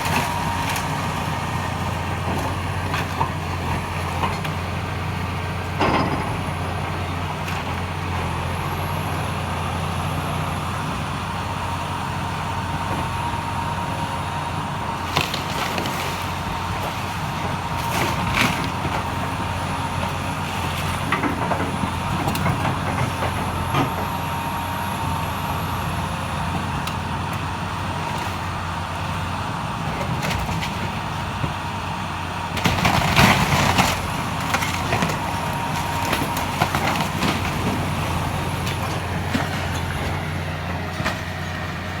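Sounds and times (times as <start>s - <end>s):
demolition machinery engine: 0.0s - 42.0s
wood and debris breaking: 32.6s - 40.3s.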